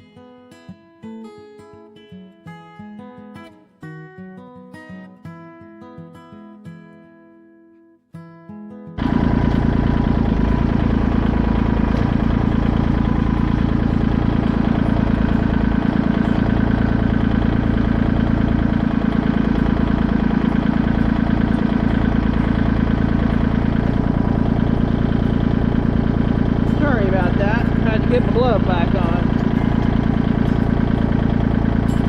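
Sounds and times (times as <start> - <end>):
tractor diesel engine running: 9.0 - 32.0.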